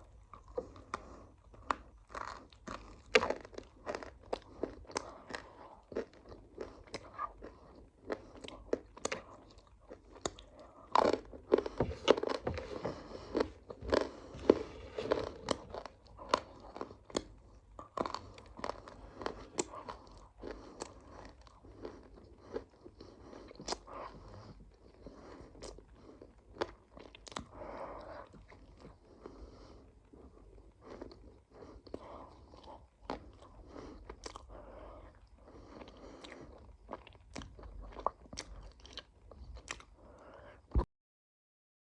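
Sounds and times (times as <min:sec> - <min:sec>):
person chewing crunchy food: 0:00.0 - 0:40.7.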